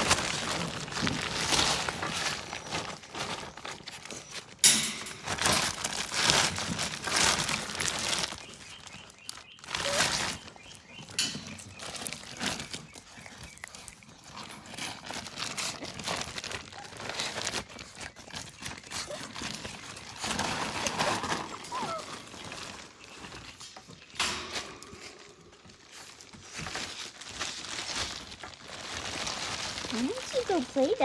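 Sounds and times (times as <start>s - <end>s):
puppies scuffling and rustling: 0.0s - 31.0s
puppy squeak: 21.7s - 22.1s.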